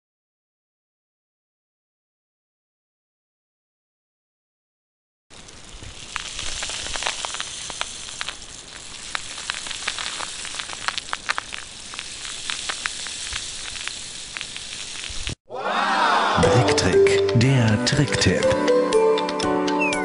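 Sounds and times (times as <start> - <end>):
rain stick pattering: 5.3 - 15.4.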